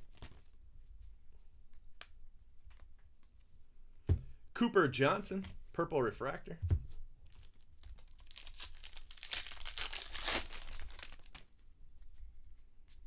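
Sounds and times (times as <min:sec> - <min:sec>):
foil wrapper crinkling and tearing: 0:07.3 - 0:11.5.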